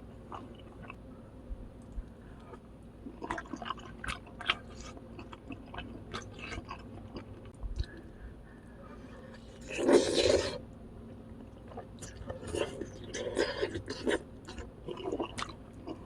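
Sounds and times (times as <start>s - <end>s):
crunchy chewing of food: 0.2s - 1.0s, 1.8s - 8.1s, 8.9s - 16.0s.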